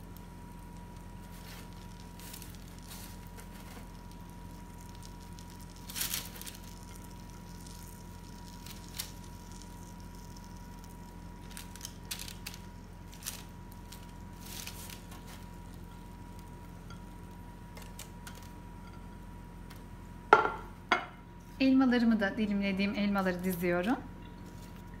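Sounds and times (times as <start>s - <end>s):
onion pieces squishing: 0.0s - 18.8s
steady low hum: 0.0s - 25.0s.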